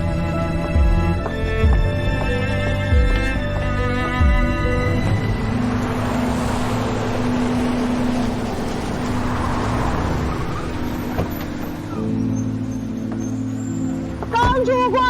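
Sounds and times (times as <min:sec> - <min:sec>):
vehicle passing by: 0:04.5 - 0:12.2.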